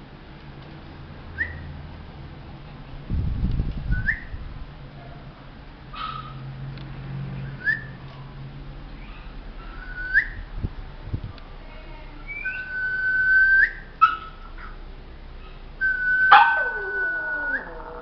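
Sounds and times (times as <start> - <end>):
dog yelping: 6.0 - 6.4, 14.0 - 14.8, 15.4 - 18.0
dog whining: 15.5 - 18.0.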